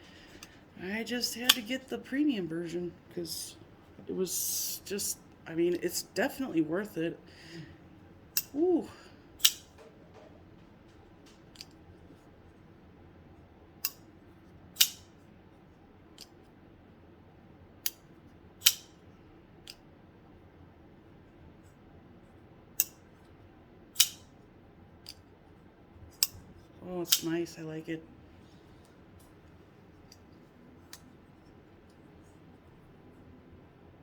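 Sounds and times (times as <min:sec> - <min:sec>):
folding knife metallic clicks: 0:09.4 - 0:09.7, 0:14.8 - 0:15.1, 0:18.6 - 0:18.9, 0:24.0 - 0:24.3, 0:27.0 - 0:27.3.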